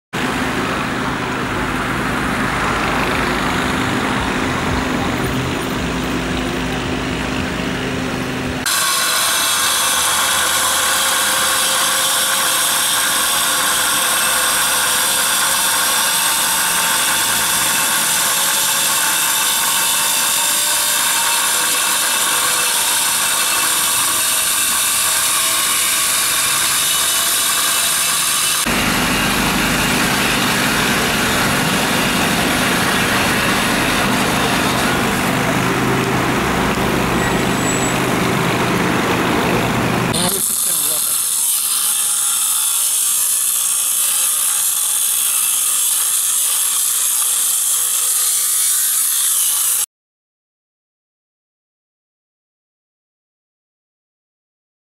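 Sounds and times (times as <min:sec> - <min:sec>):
low-pitched engine: 0:00.2 - 0:08.7, 0:28.6 - 0:40.2
high-pitched power tool: 0:00.2 - 0:49.9.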